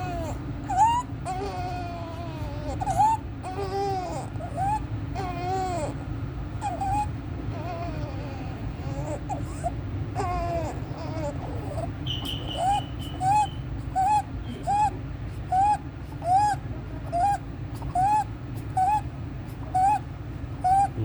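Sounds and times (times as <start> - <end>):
baby whimpering: 0.0 - 21.0
baby's high-pitched squeaky breathing: 0.0 - 21.0.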